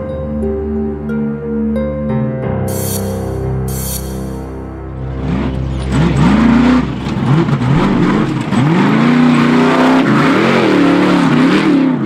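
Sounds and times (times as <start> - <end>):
engine revving and accelerating: 5.0 - 12.0.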